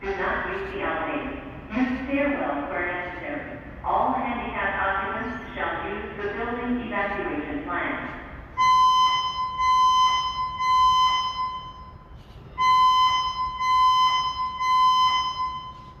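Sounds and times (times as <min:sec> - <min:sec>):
electronic emergency alarm pulses: 0:08.6 - 0:16.0.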